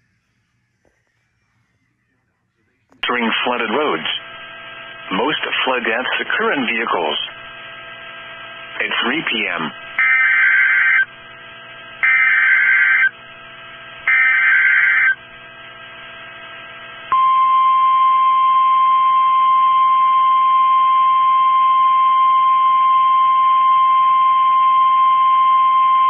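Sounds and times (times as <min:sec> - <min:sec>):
faint hum: 0:00.0 - 0:26.0
steady warning alarm tone: 0:09.9 - 0:11.1, 0:12.0 - 0:13.2, 0:14.0 - 0:15.2
buzzy data bursts: 0:10.0 - 0:11.0.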